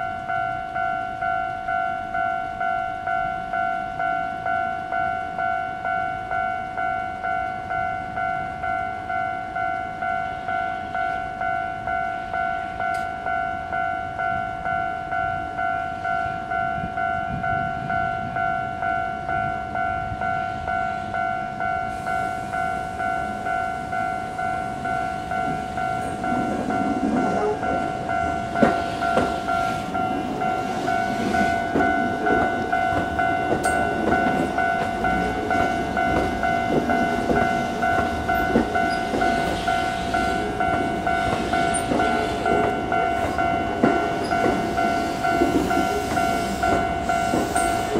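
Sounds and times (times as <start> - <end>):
electric train rumbling: 0.0 - 47.9
level crossing warning bell: 0.0 - 47.9
wheels clicking over rail joints: 22.8 - 47.9.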